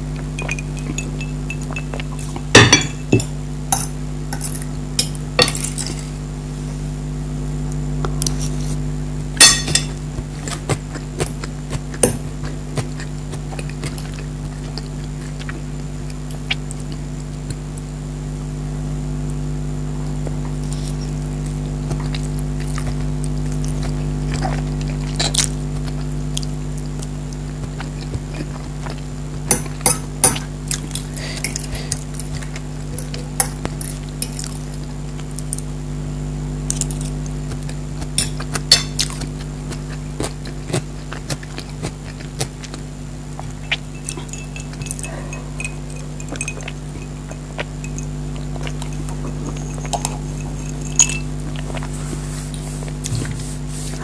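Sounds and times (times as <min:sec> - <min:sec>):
steady low hum: 0:00.0 - 0:54.0
cutlery clinking on a plate: 0:09.4 - 0:10.0, 0:38.2 - 0:39.1, 0:50.8 - 0:51.3.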